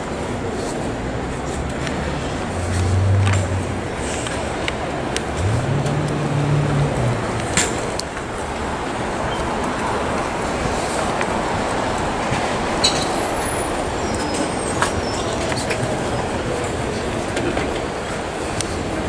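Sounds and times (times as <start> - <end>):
engine humming: 0.0 - 12.4
passing vehicles rushing: 0.0 - 19.0.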